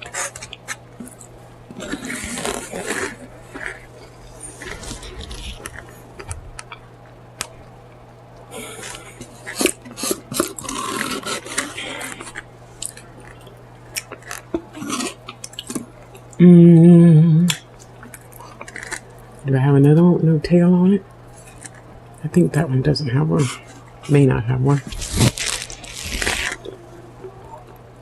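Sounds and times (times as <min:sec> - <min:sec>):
crunching: 0:00.0 - 0:07.7, 0:08.4 - 0:16.4, 0:17.5 - 0:19.4, 0:24.7 - 0:27.0
close chewing of food: 0:00.0 - 0:07.8, 0:08.4 - 0:16.4, 0:17.6 - 0:19.4.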